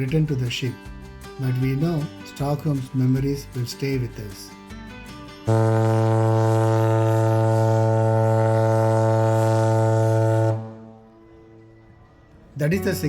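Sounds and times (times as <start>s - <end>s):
ship horn long deep blast: 5.4s - 11.9s.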